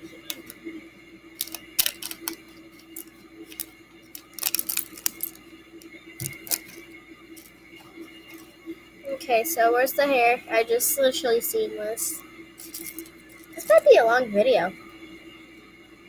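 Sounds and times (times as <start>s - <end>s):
steady low hum: 0.0s - 16.0s
plastic pieces clicking and rattling: 0.3s - 0.6s, 1.4s - 5.4s, 6.2s - 6.8s, 12.6s - 13.8s.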